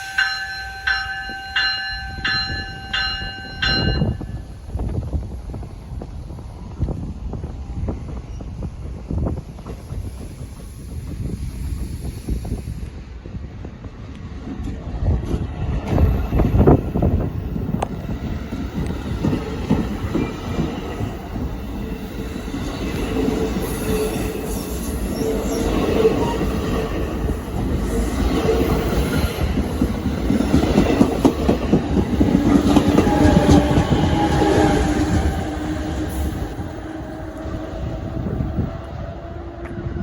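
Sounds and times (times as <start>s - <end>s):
locomotive held tones: 0.0s - 4.5s
train cars rumbling: 0.0s - 40.0s.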